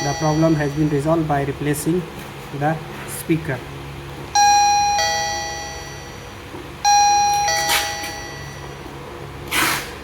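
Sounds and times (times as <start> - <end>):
electronic doorbell ding-dong chime: 0.0 - 0.8, 4.4 - 6.2, 6.8 - 8.7.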